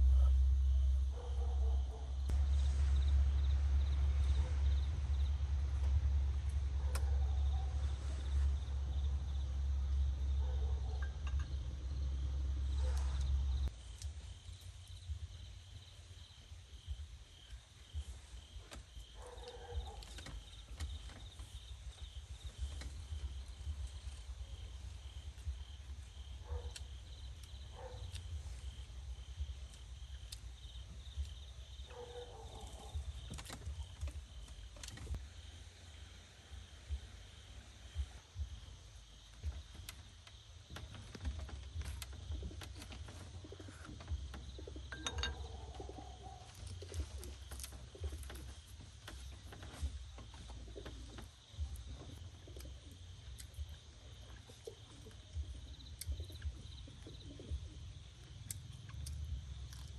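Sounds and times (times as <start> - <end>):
low rumble: 0.0 - 15.9
insects chirping: 0.0 - 59.9.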